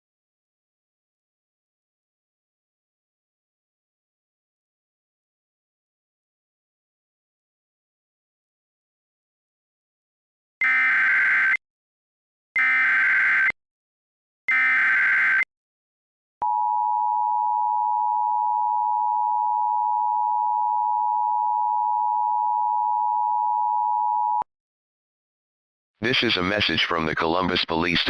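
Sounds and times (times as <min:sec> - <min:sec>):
buzzy data tone bursts: 0:14.5 - 0:15.4.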